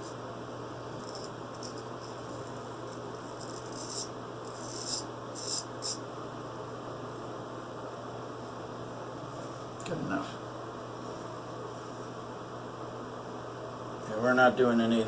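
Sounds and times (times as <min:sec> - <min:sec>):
low electrical hum: 0:00.0 - 0:15.0
straight razor scraping stubble: 0:01.0 - 0:06.0.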